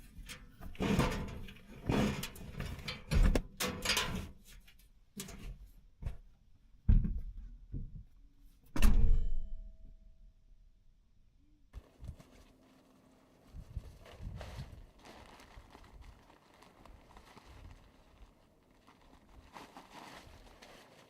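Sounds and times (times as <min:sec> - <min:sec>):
short rustles: 0:11.8 - 0:21.0.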